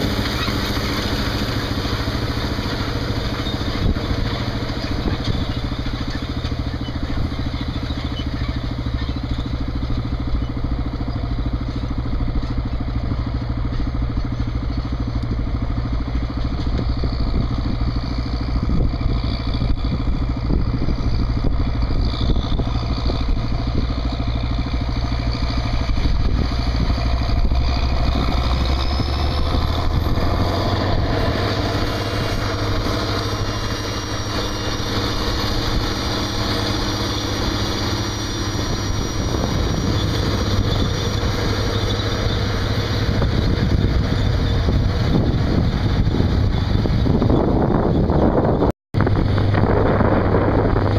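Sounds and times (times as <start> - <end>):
tractor diesel engine running: 0.0 - 50.9
turbocharger whistle: 28.4 - 44.8
thin high tone rising: 28.6 - 43.1.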